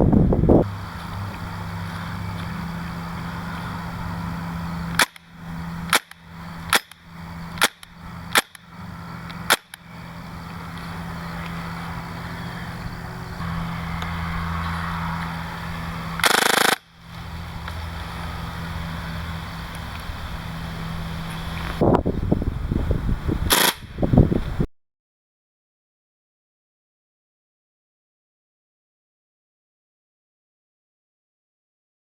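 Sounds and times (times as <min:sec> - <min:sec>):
airsoft gun shots: 0:05.9 - 0:07.0, 0:07.6 - 0:08.6, 0:16.2 - 0:16.8, 0:23.5 - 0:23.9.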